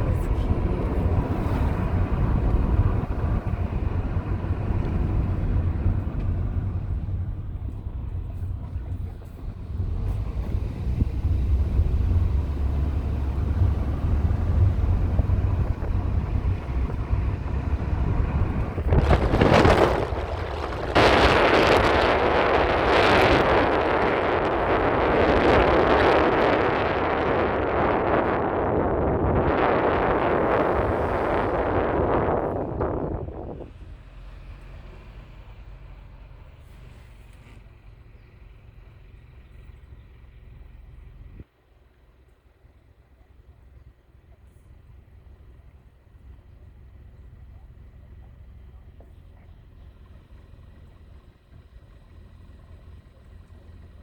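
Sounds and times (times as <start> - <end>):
car road rumble from inside: 0.0 - 54.0
loud rushing noise: 14.8 - 33.7.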